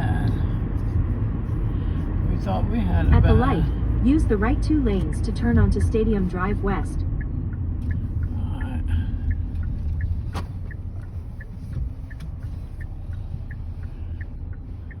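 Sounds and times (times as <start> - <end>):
road rumble inside moving car: 0.0 - 15.0
turn signal ticking: 0.0 - 15.0.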